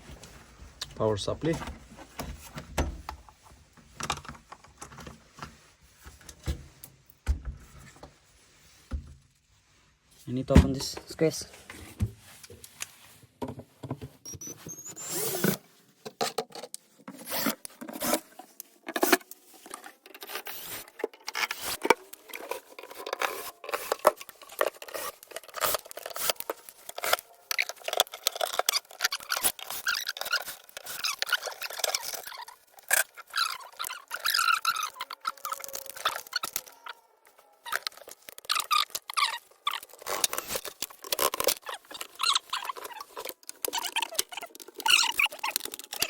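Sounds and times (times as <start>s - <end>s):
casing being handled and opened: 14.0s - 37.0s, 37.6s - 46.0s.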